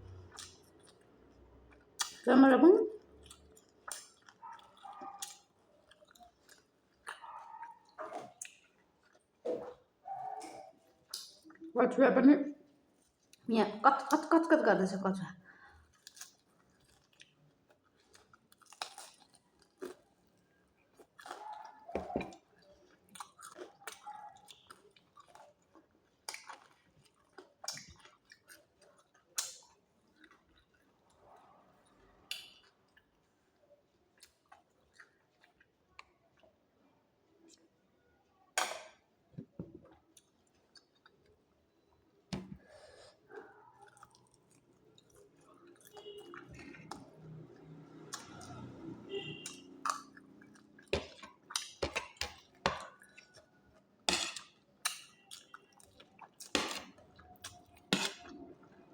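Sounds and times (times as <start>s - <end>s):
person chewing and crunching food: 0.0s - 2.3s, 3.0s - 11.7s, 12.7s - 14.3s, 15.5s - 39.1s, 39.7s - 58.9s
wet mouth smacks: 2.0s - 2.2s.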